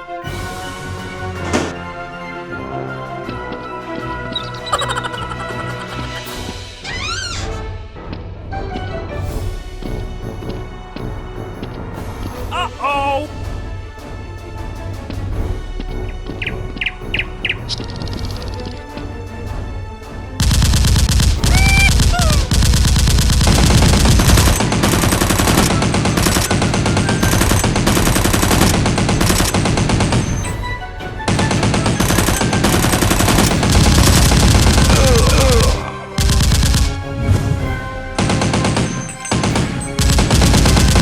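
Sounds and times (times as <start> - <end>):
rapid machine-gun fire: 20.4 - 30.6, 31.3 - 37.2, 38.1 - 41.0.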